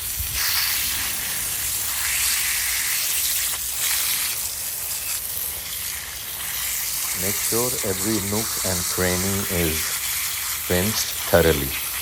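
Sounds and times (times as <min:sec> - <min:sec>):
pressure washer spraying water: 0:00.0 - 0:12.0.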